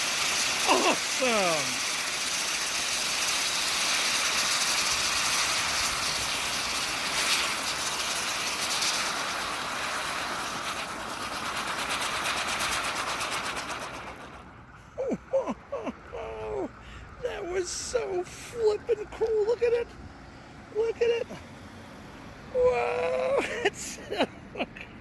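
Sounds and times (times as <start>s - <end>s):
spinning firework hissing: 0.0s - 24.7s.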